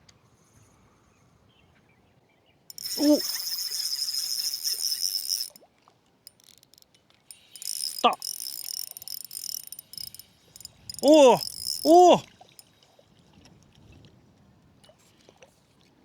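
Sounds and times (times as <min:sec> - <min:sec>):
spinning reel rattling: 0:02.7 - 0:05.6, 0:06.3 - 0:11.9.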